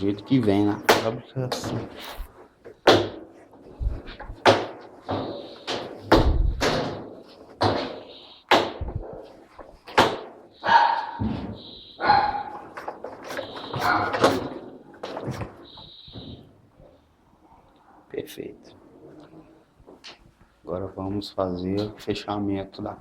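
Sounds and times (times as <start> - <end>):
plastic scraping: 11.6 - 16.4.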